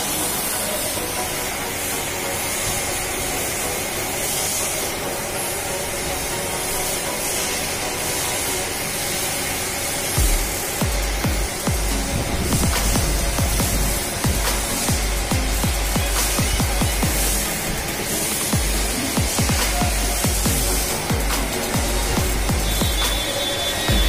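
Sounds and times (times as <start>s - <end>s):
steady hissing noise: 0.0s - 24.0s
music with heavy bass beat: 10.2s - 24.0s.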